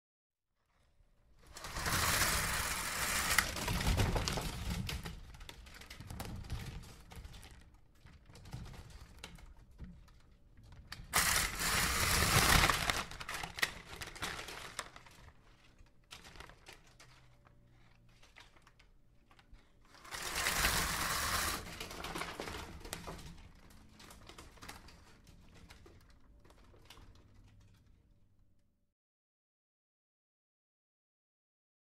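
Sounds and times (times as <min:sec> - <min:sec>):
plastic rustling and crinkling: 0:00.7 - 0:28.5
zipper being pulled: 0:11.2 - 0:13.1, 0:20.1 - 0:21.7.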